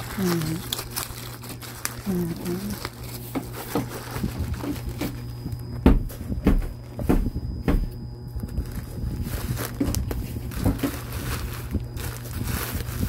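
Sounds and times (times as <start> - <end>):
electric fan humming: 0.0 - 13.0
parcel handling thumps: 9.5 - 11.8.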